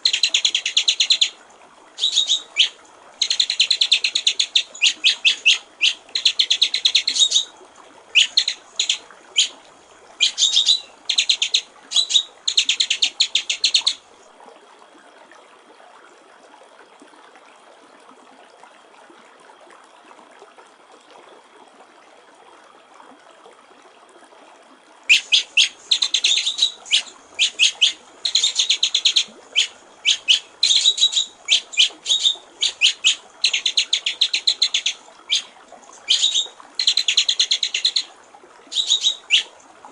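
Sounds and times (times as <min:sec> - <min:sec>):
shama bird singing: 0:00.0 - 0:01.4, 0:02.0 - 0:07.5, 0:08.1 - 0:09.6, 0:10.2 - 0:14.0, 0:25.1 - 0:38.1, 0:38.7 - 0:39.5
water trickling: 0:00.0 - 0:39.9.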